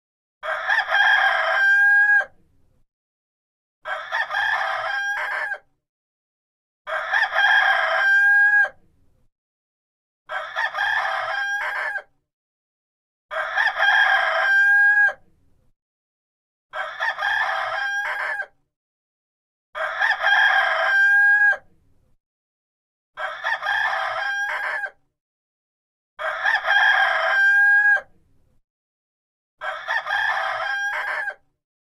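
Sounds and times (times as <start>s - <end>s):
rooster crowing: 0.4s - 2.3s, 3.8s - 5.6s, 6.9s - 8.8s, 10.3s - 12.1s, 13.3s - 15.2s, 16.7s - 18.6s, 19.8s - 21.6s, 23.2s - 25.0s, 26.2s - 28.1s, 29.6s - 31.4s.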